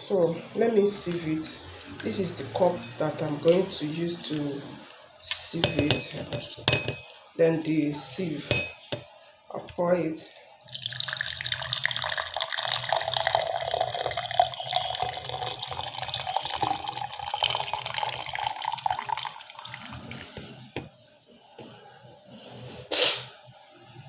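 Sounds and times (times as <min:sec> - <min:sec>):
water pouring into a cup: 0:10.5 - 0:20.7
water dripping: 0:10.6 - 0:20.0.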